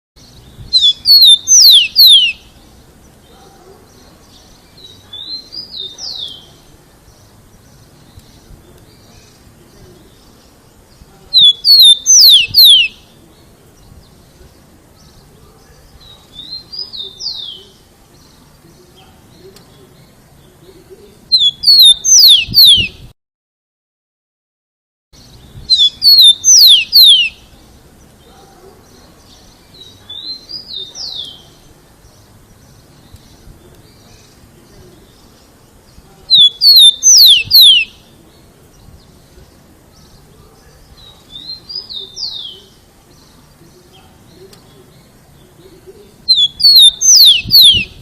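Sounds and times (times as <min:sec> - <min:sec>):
sparrow singing whistles: 0:00.4 - 0:02.5, 0:11.4 - 0:13.1, 0:21.3 - 0:23.0, 0:25.2 - 0:27.5, 0:36.3 - 0:38.0, 0:46.0 - 0:48.0.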